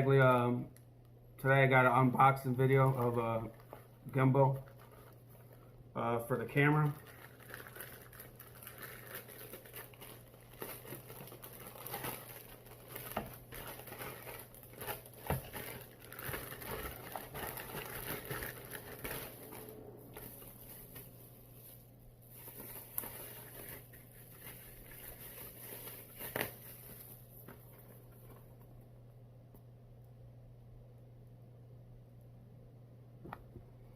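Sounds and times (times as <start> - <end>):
packaging rustling and crinkling: 2.2 - 5.8, 6.4 - 28.7.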